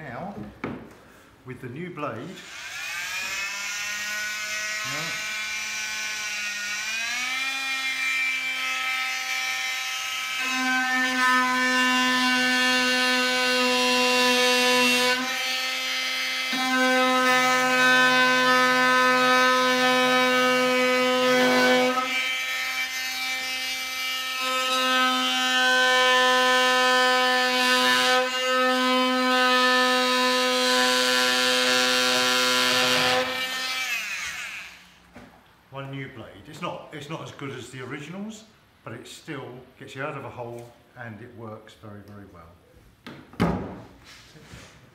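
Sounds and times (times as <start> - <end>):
oscillating multi-tool buzzing: 2.4 - 11.5.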